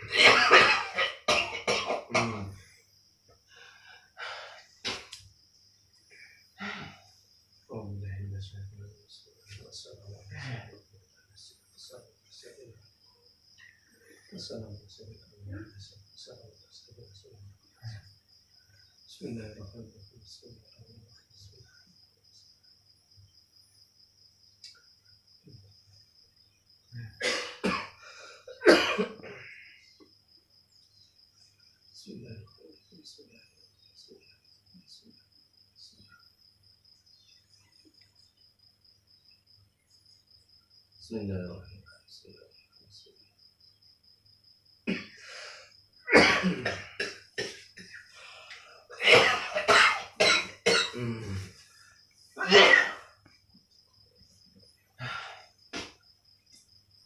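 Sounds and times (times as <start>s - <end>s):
man coughing hard: 0.0s - 2.6s, 27.2s - 29.6s, 44.9s - 45.2s, 46.1s - 48.0s, 48.9s - 51.5s, 52.4s - 53.1s.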